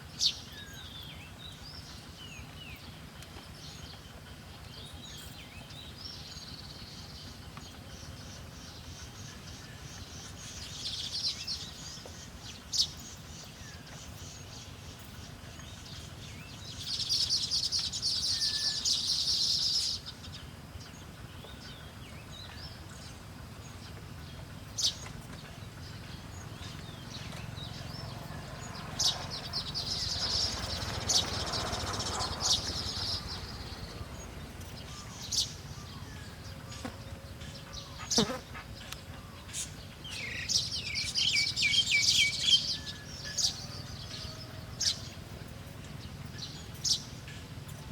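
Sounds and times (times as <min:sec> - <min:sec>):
bird chittering calls: 0:00.2 - 0:45.1.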